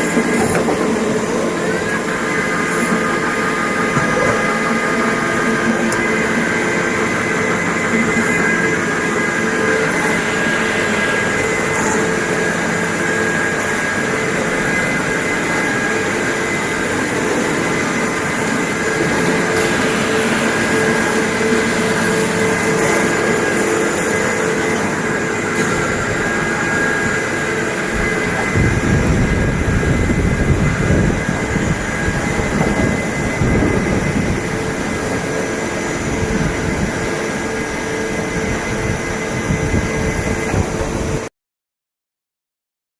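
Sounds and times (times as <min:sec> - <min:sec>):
lathe machine whine: 0:00.0 - 0:41.3.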